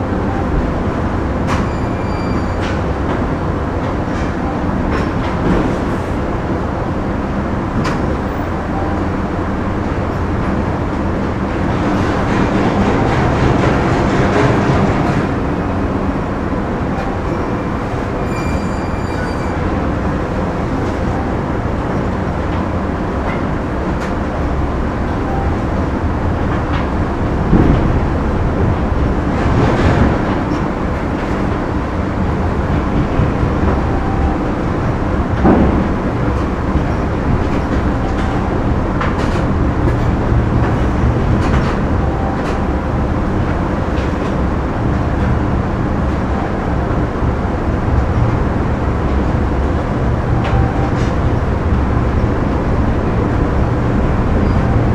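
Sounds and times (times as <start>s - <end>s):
factory machinery rumble: 0.0s - 54.9s
machinery clanks: 25.2s - 47.1s.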